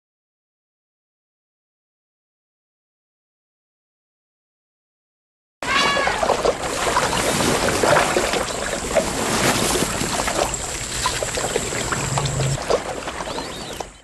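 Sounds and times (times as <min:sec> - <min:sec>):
water splashing and sloshing: 0:05.6 - 0:14.0.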